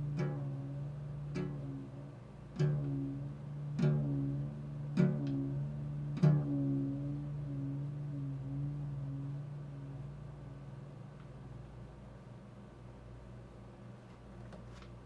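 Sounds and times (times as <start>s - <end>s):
plucked string instrument notes: 0.0s - 10.7s.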